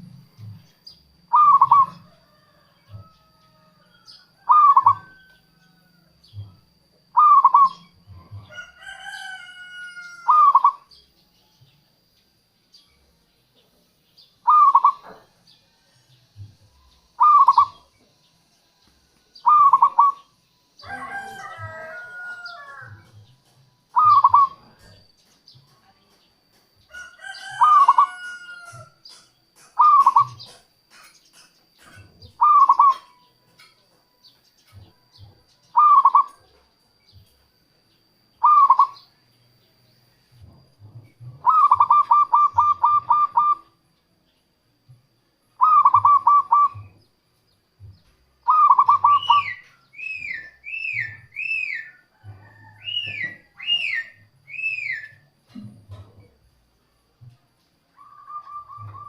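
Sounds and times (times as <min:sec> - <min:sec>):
dove cooing: 0:00.0 - 0:11.0, 0:14.4 - 0:15.4, 0:17.1 - 0:17.9, 0:19.4 - 0:23.1, 0:23.9 - 0:25.0, 0:27.0 - 0:31.0, 0:31.8 - 0:33.2, 0:34.8 - 0:36.6, 0:38.4 - 0:39.1, 0:40.4 - 0:43.8, 0:45.6 - 0:47.0, 0:48.4 - 0:56.4, 0:58.0 - 0:59.0
another bird calling: 0:01.3 - 0:02.0, 0:04.4 - 0:05.2, 0:07.1 - 0:08.0, 0:09.0 - 0:10.9, 0:14.4 - 0:15.2, 0:17.2 - 0:17.8, 0:19.4 - 0:23.1, 0:23.9 - 0:24.7, 0:27.3 - 0:30.6, 0:32.3 - 0:33.2, 0:35.7 - 0:36.4, 0:38.4 - 0:39.1, 0:41.4 - 0:43.8, 0:45.6 - 0:47.0, 0:48.4 - 0:52.0.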